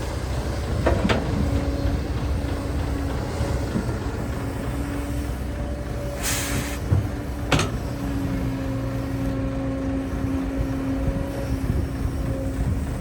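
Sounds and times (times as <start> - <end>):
diesel engine running: 0.0 - 13.0
short hiss: 6.2 - 6.8.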